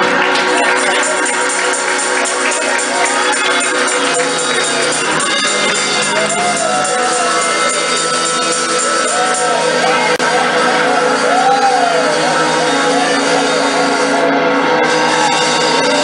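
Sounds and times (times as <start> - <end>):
church praise music: 0.0 - 16.0
tambourine jingling beat: 0.3 - 10.2.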